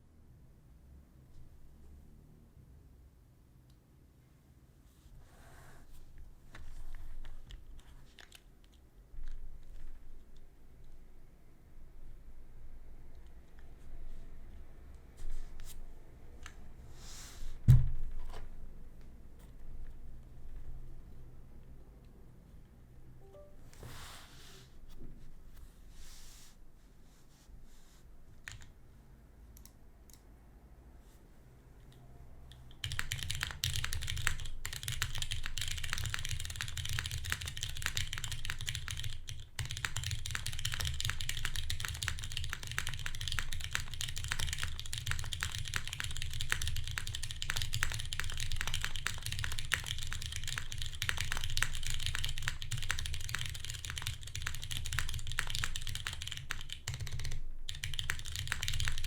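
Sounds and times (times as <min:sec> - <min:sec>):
mechanical keyboard typing: 0:07.2 - 0:08.8, 0:32.5 - 0:59.0.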